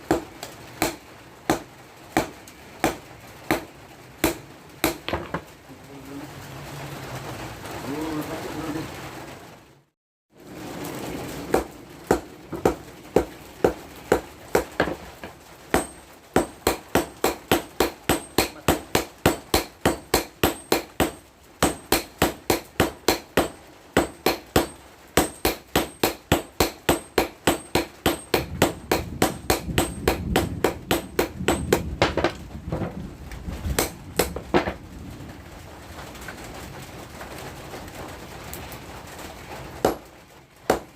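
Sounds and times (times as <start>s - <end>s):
hammer striking steel: 0.1s - 5.4s, 15.7s - 32.3s, 39.8s - 40.1s.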